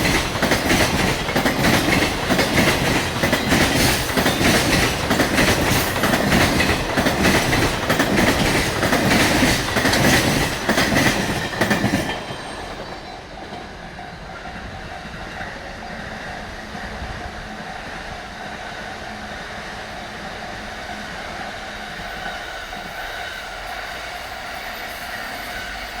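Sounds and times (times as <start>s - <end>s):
freight wagons clattering over rail joints: 0.0s - 13.7s.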